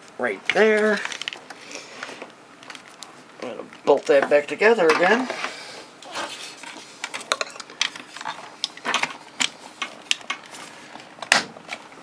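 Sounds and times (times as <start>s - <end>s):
plastic parts clicking and knocking: 7.0s - 10.5s.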